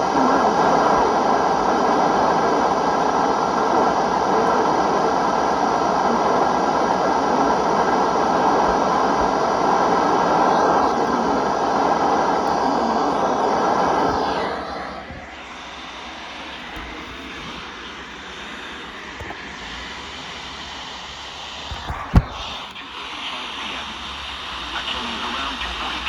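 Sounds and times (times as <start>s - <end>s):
radio static hiss: 6.0s - 15.7s.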